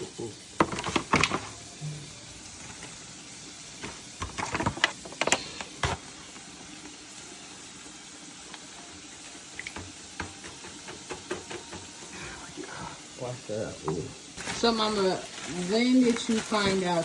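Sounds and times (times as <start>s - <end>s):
low hiss of cooking: 0.0s - 17.0s
cookware and utensils clattering: 0.6s - 1.6s, 3.8s - 6.1s.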